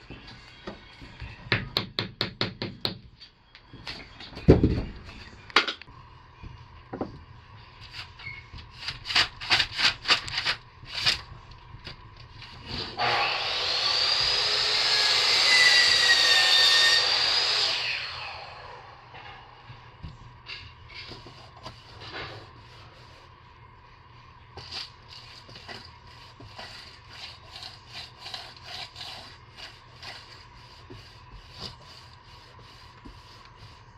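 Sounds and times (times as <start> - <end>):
power tool cutting wood: 12.7 - 18.8.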